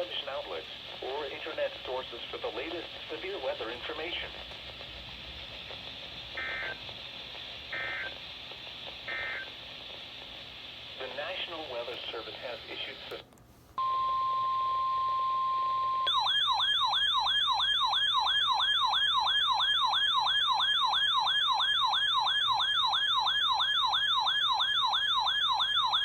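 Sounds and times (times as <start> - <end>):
steady warning alarm tone: 6.3 - 7.0, 7.7 - 8.3, 9.0 - 9.6, 13.8 - 26.0.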